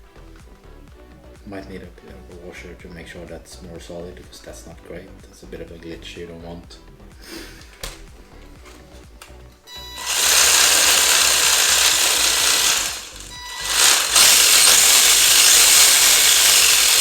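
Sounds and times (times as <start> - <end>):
rc car motor whirring: 10.0 - 17.0.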